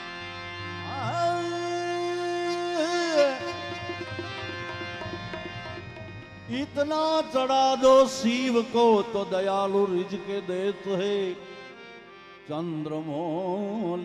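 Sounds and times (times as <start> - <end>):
devotional music instruments: 0.0 - 14.0
hand drums: 3.2 - 7.1.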